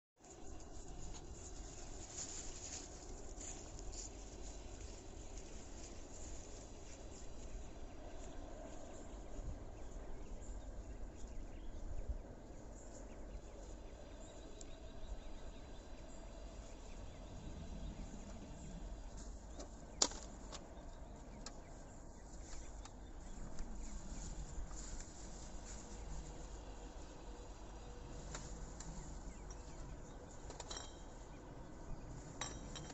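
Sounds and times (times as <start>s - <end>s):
low rumble: 0.4s - 22.1s.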